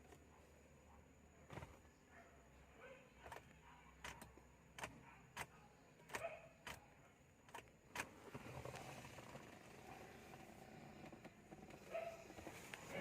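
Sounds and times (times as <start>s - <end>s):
faint irregular clicks and knocks: 3.2s - 13.0s.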